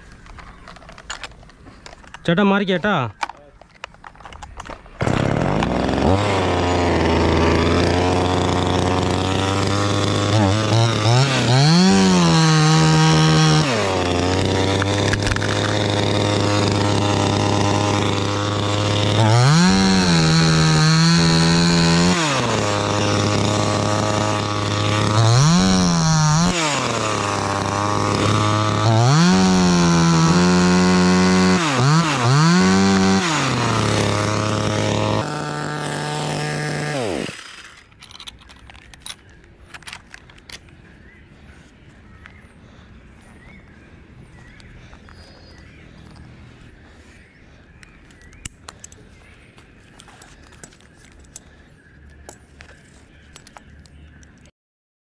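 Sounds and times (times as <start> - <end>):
chainsaw idling and revving: 5.0 - 39.2.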